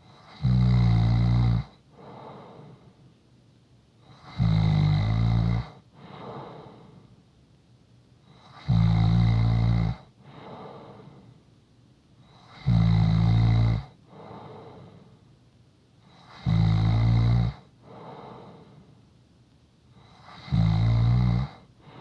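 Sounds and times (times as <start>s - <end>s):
soft breathing: 1.9s - 3.2s, 5.9s - 7.3s, 10.2s - 11.5s, 14.0s - 15.4s, 17.6s - 19.1s, 21.6s - 22.0s
person snoring: 4.2s - 6.8s, 8.4s - 11.0s, 12.4s - 14.8s, 16.2s - 18.5s, 20.1s - 21.7s.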